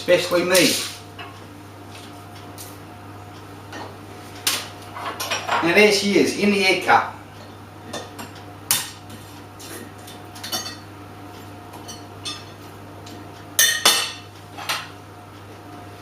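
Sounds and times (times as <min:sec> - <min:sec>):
kitchenware clinking: 0:05.0 - 0:05.7, 0:13.6 - 0:15.0.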